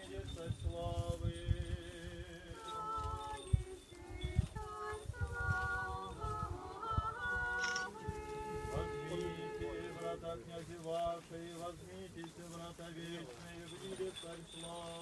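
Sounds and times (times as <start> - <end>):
choir singing a cappella: 1.8 - 11.2.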